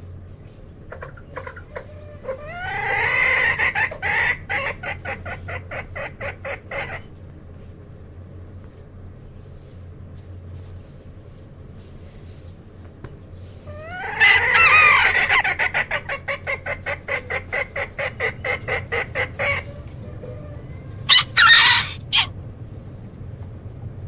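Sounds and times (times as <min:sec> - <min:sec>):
rapid chicken clucks: 0:00.5 - 0:07.2, 0:12.9 - 0:22.3
chicken squawks: 0:00.9 - 0:07.0, 0:13.7 - 0:19.7, 0:21.1 - 0:22.3.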